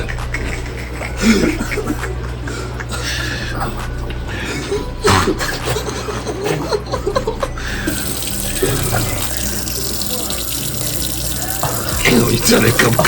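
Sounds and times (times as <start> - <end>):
running water: 7.7 - 13.0.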